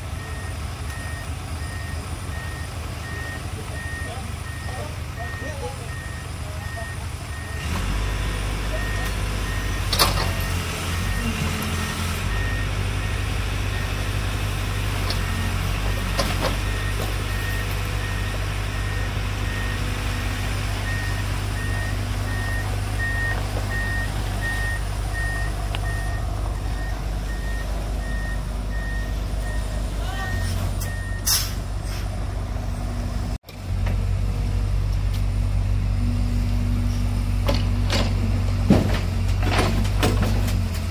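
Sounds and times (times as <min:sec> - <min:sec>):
heavy diesel machinery running: 0:00.0 - 0:40.9
reversing alarm beeping: 0:00.2 - 0:07.8, 0:08.7 - 0:14.0, 0:15.3 - 0:19.9, 0:20.8 - 0:31.4.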